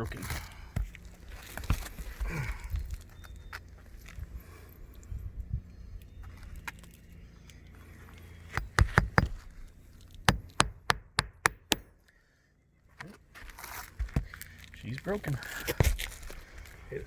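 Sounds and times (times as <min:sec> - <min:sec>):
hammer knocking on roof: 0:08.6 - 0:09.4, 0:10.3 - 0:11.9.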